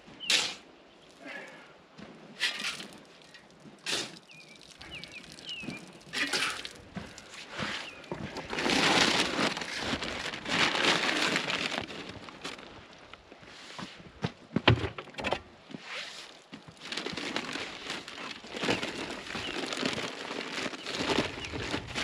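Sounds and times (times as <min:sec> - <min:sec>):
scraping and scooping concrete: 0:02.3 - 0:11.8.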